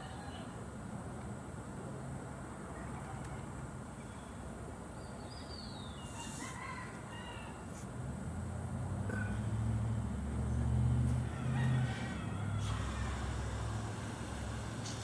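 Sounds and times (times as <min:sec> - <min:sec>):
bird chirps: 0:05.0 - 0:06.3
vehicle engine hum: 0:07.7 - 0:15.0.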